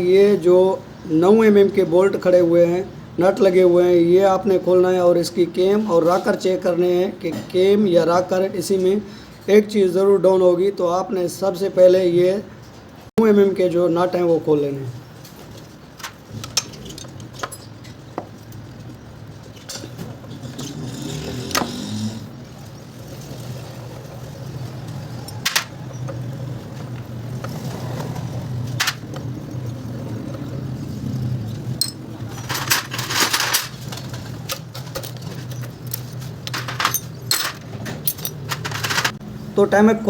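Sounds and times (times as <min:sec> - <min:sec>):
small metal parts rattling: 0:15.5 - 0:20.6, 0:23.1 - 0:26.2, 0:28.7 - 0:30.4, 0:31.4 - 0:39.2
spanner clinking on metal: 0:16.0 - 0:18.6, 0:31.5 - 0:39.2.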